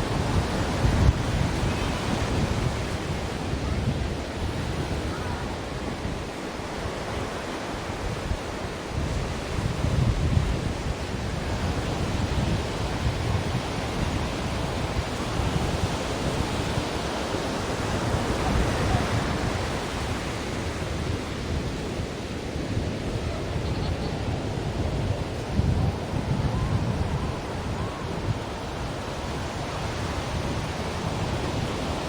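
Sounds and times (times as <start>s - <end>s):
waves breaking: 10.5s - 32.0s.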